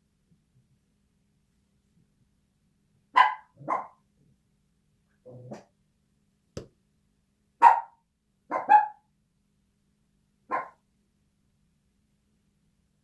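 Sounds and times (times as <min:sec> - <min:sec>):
dog barking: 0:03.1 - 0:04.0, 0:07.6 - 0:09.1, 0:10.5 - 0:10.8.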